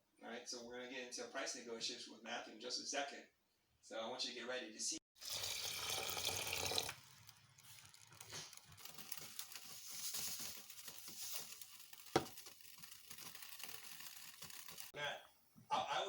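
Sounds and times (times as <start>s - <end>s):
rice cooking crackle: 5.2s - 15.0s
water running from tap: 5.2s - 15.0s.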